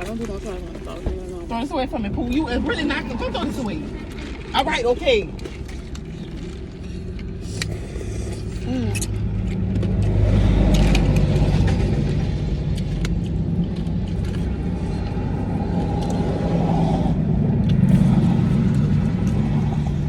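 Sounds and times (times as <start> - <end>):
low engine rumble: 0.0 - 20.0.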